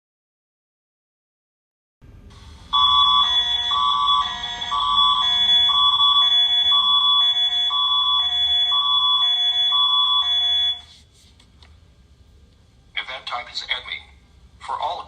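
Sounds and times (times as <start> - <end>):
alert tone with alternating chords: 2.3 - 10.9.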